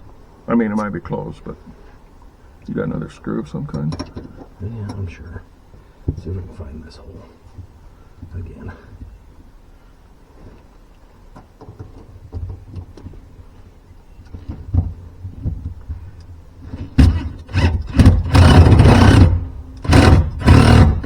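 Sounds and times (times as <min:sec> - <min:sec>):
rattling clatter: 0:16.7 - 0:21.0
sharp knocks: 0:16.8 - 0:21.0.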